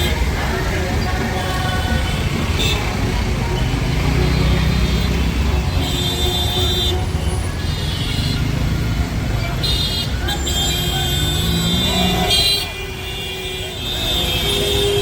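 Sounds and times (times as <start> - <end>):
music: 0.0 - 7.5
crowd voices: 0.0 - 15.0
vehicle traffic rumble: 0.0 - 15.0.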